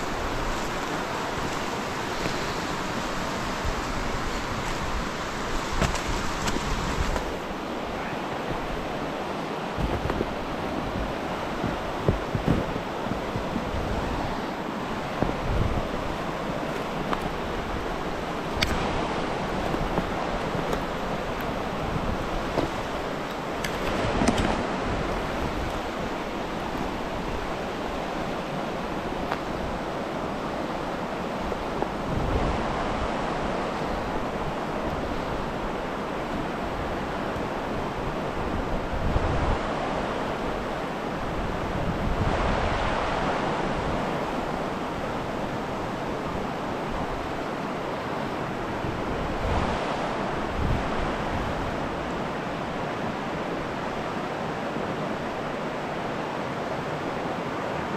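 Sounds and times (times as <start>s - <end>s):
wind buffeting microphone: 0.0s - 47.5s, 48.3s - 52.8s
river rapids rushing: 0.0s - 57.9s.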